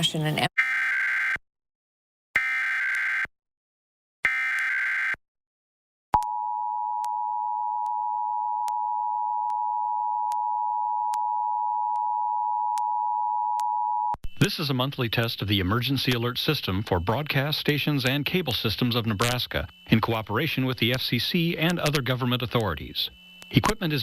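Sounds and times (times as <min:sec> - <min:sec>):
screechy digital data tones: 0:04.3 - 0:05.2, 0:14.2 - 0:24.0
two-tone attention signal: 0:16.9 - 0:24.0.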